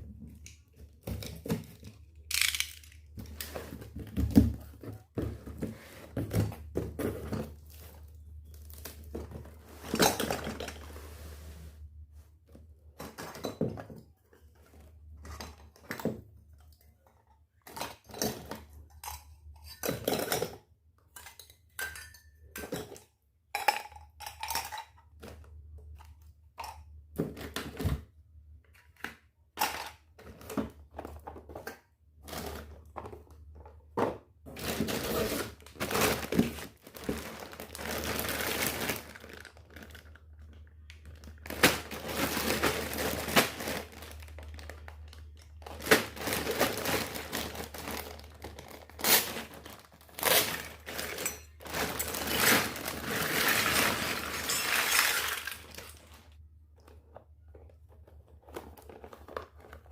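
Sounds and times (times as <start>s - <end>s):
packaging crinkling and tearing: 2.2s - 3.1s, 34.6s - 56.2s
toy pieces clicking and knocking: 2.2s - 3.1s.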